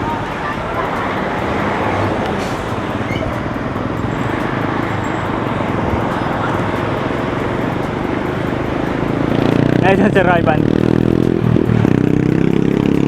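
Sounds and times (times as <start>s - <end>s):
passing traffic: 0.0s - 13.0s
road noise: 0.0s - 13.0s.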